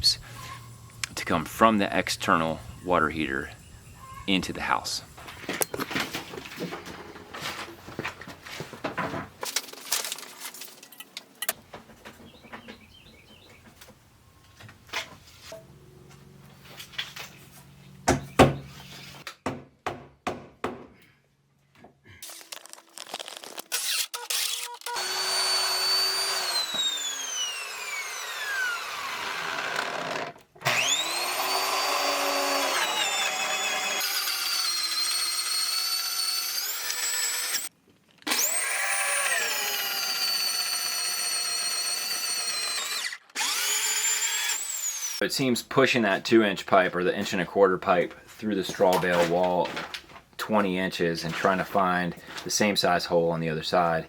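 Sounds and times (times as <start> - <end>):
drill whining under load: 23.7 - 45.2.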